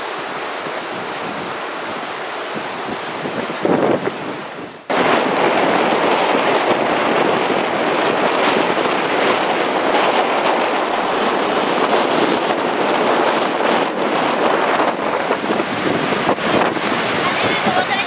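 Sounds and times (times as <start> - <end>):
rush of turbulent river water: 0.0 - 18.0.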